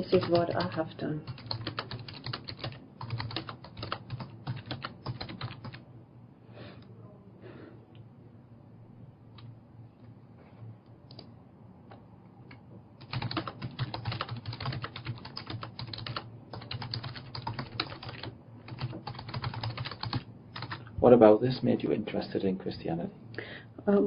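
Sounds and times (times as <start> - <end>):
typing on computer keyboard: 0.0 - 5.8, 13.0 - 20.8
low steady hum: 0.0 - 24.0.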